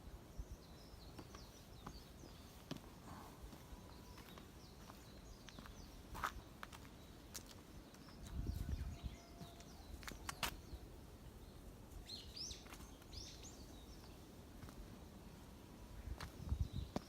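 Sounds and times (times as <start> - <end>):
faint outdoor background noise: 0.0 - 17.0
bird chirping: 0.4 - 14.3.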